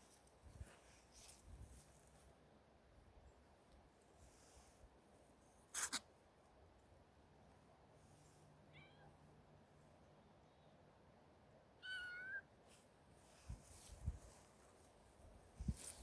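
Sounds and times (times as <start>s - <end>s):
kitten mewing: 11.8s - 12.4s
rustling: 12.6s - 16.0s.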